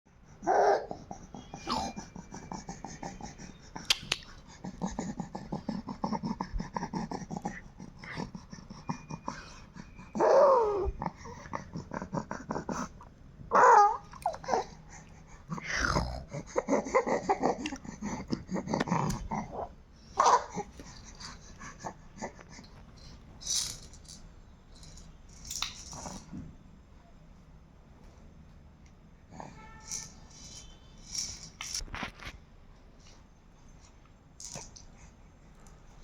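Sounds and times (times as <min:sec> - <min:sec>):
baby whining cries: 0:00.4 - 0:03.3, 0:10.1 - 0:11.1, 0:13.5 - 0:14.8.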